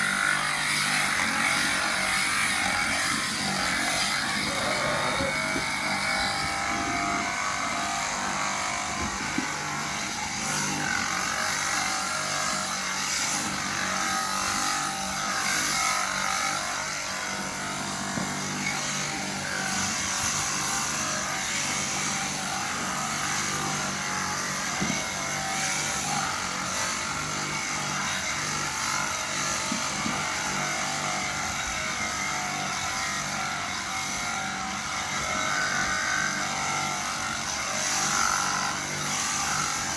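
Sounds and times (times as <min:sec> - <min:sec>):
electric shears buzzing: 0:00.0 - 0:39.9.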